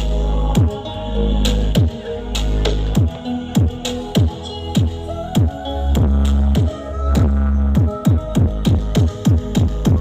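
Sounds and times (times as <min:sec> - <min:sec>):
electronic dance music: 0:00.0 - 0:10.0
heavy deep-bass note: 0:06.0 - 0:10.0.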